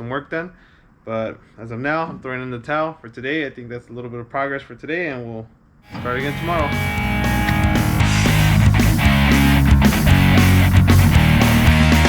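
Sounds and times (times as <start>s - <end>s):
heavy rock music: 5.9s - 12.0s.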